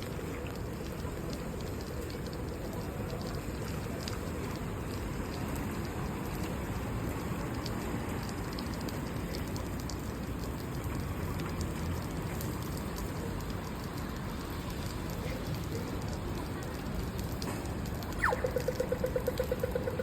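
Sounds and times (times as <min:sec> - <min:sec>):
rain falling on pavement: 0:00.0 - 0:20.0
crossing signal rapid ticking: 0:12.8 - 0:20.0.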